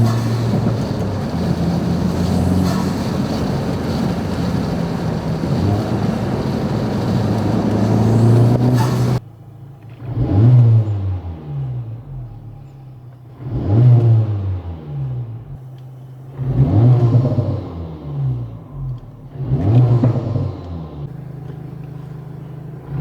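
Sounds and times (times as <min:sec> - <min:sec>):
car engine revving: 0:00.0 - 0:09.2, 0:09.9 - 0:12.7, 0:13.4 - 0:15.7, 0:16.3 - 0:23.0
driving noise rushing: 0:00.0 - 0:09.2.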